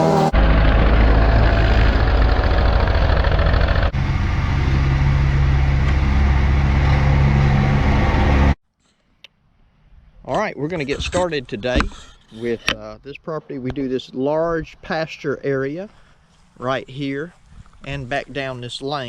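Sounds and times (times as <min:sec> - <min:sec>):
mower engine running: 0:00.0 - 0:08.6.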